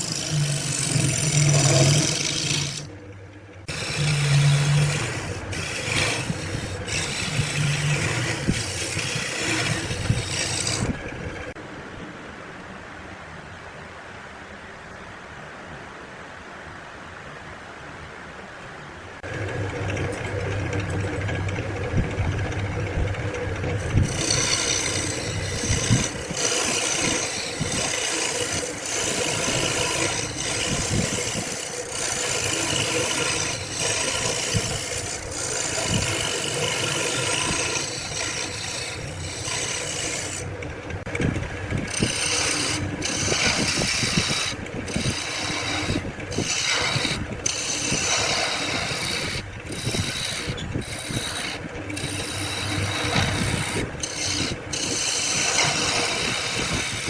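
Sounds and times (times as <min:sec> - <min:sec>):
abrasive tool scraping wood: 0:00.0 - 0:03.0, 0:03.6 - 0:11.1, 0:23.5 - 0:57.0.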